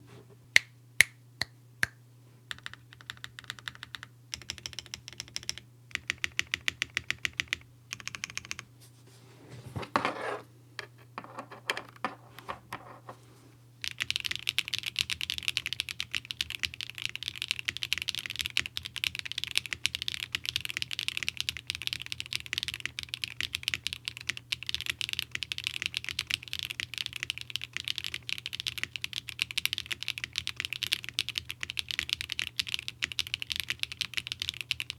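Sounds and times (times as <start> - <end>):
mechanical keyboard typing: 2.5 - 8.6, 13.8 - 34.9.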